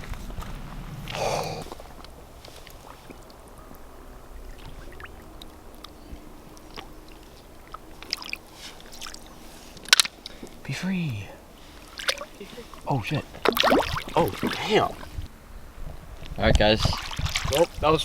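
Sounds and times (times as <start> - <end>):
short noisy rush: 0.0 - 5.7
water sloshing and lapping: 0.0 - 10.6, 11.4 - 18.0.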